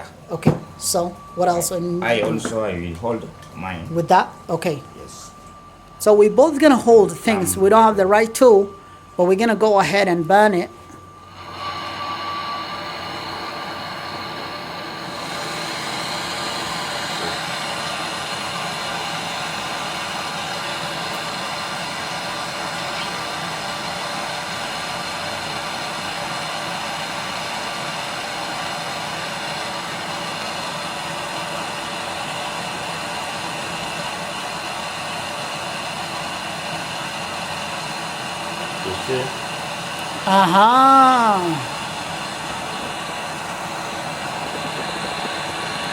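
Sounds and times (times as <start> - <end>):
gas torch flame hissing: 11.2 - 45.9.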